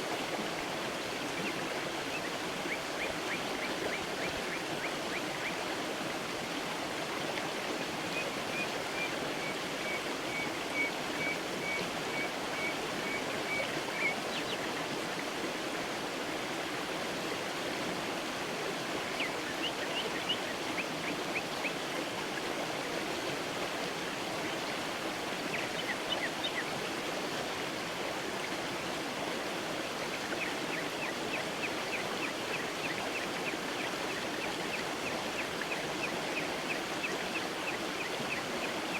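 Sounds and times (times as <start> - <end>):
creek water running over stones: 0.0 - 38.9.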